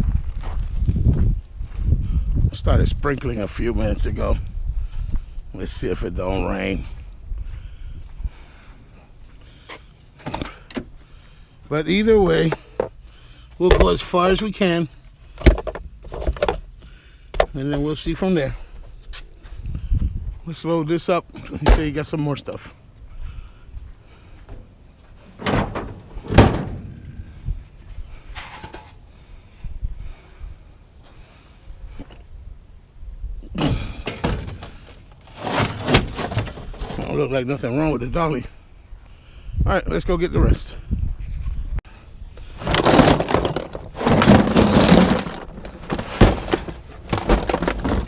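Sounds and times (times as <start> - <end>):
heavy items thudding onto truck: 24.5 - 27.5, 33.6 - 36.9, 42.6 - 48.0
metal tools clattering: 25.4 - 27.3, 42.6 - 48.0.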